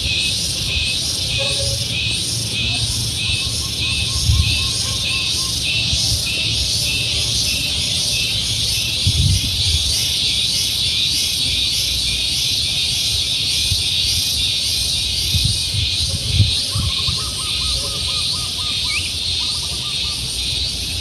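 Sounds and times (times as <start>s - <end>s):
pulsing insect chorus: 0.0s - 21.0s.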